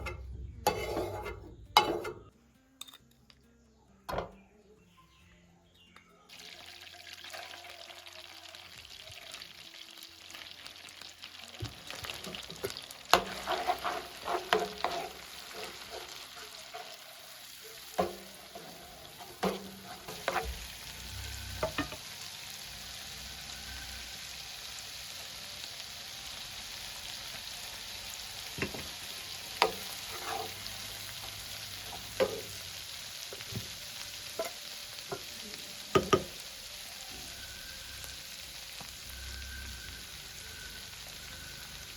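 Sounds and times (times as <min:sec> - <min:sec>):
spatula scraping a pan: 0:00.7 - 0:02.2, 0:12.0 - 0:20.9, 0:28.6 - 0:32.6
food sizzling in a pan: 0:06.3 - 0:41.9.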